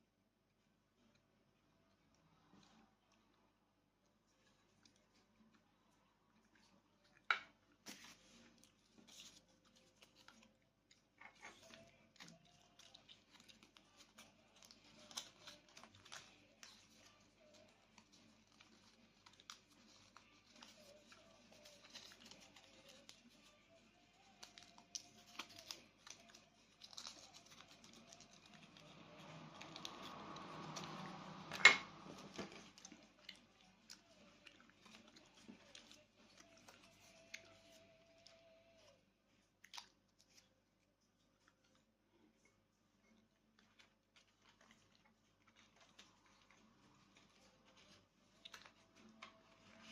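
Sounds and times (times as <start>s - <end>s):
packaging crinkling: 24.2s - 30.8s.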